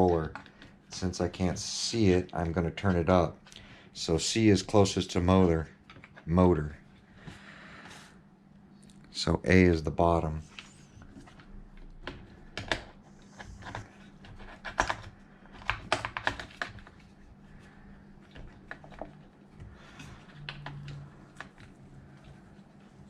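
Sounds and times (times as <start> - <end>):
hands clicking and tapping plastic parts: 0.0 - 1.6, 10.5 - 23.0.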